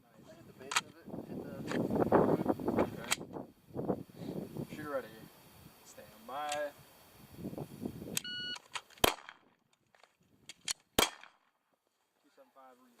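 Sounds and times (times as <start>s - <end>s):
shot timer beep: 8.2s - 8.6s
pistol shots: 9.0s - 9.4s, 10.6s - 11.4s.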